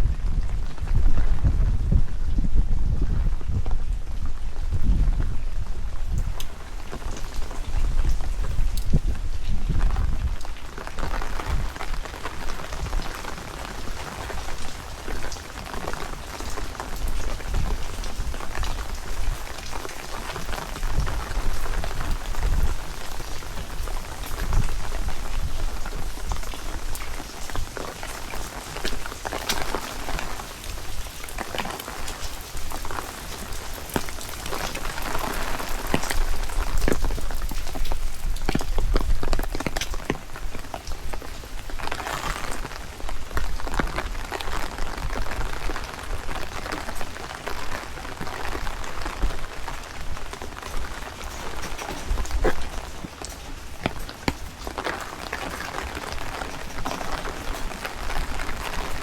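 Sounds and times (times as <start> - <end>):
heavy rain falling: 0.0 - 59.0
wind rumbling on microphone: 0.0 - 59.0
raindrops ticking: 3.9 - 59.0.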